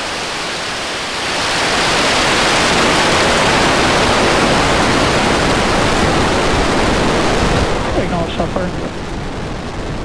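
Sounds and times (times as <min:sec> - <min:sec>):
rocket engine rumble: 0:02.7 - 0:10.0.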